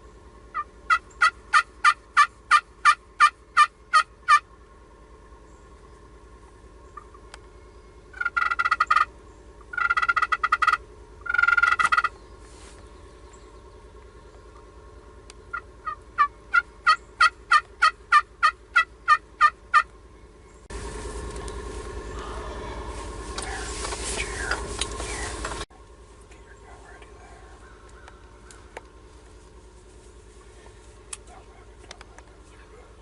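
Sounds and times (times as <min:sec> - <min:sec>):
turkey yelps: 0:00.5 - 0:04.4, 0:06.9 - 0:07.2, 0:08.1 - 0:09.1, 0:09.7 - 0:12.2, 0:15.5 - 0:19.9, 0:26.4 - 0:28.8
turkey gobbling: 0:00.5 - 0:04.5, 0:06.8 - 0:07.3, 0:08.1 - 0:12.2, 0:15.5 - 0:19.9, 0:26.3 - 0:28.9.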